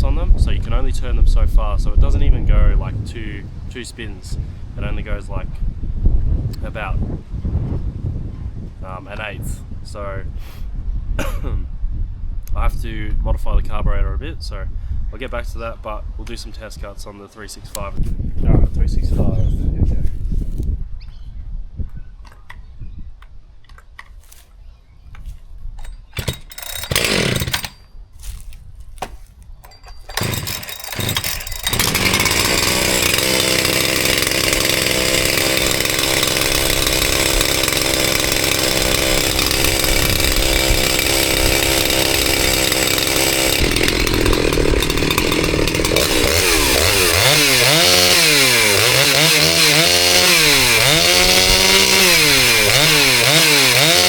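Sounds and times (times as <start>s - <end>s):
chainsaw starter cord pulls: 25.8s - 28.4s, 29.0s - 54.0s
chainsaw running and revving: 26.2s - 27.8s, 30.1s - 54.0s.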